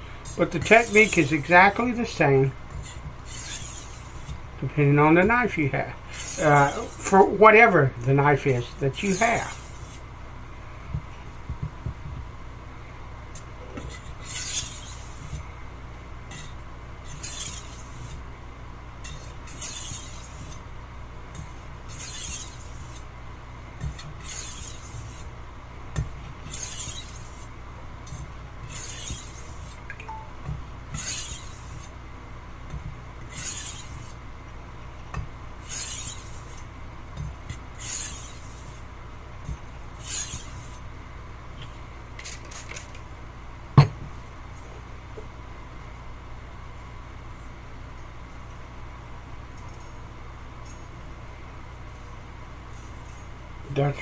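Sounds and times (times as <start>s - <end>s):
knife scraping on whetstone: 0.2s - 4.4s, 6.1s - 7.4s, 8.6s - 10.0s, 13.8s - 15.4s, 16.3s - 18.2s, 19.0s - 20.6s, 21.3s - 23.1s, 23.8s - 25.3s, 26.0s - 32.0s, 32.7s - 34.2s, 35.6s - 40.8s.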